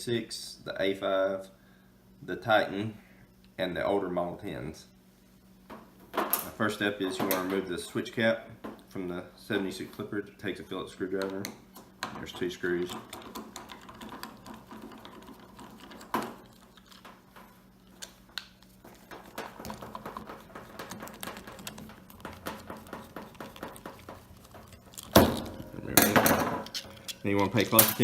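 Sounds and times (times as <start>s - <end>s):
screwdriver clicking and scraping: 12.9s - 25.7s, 26.6s - 28.0s.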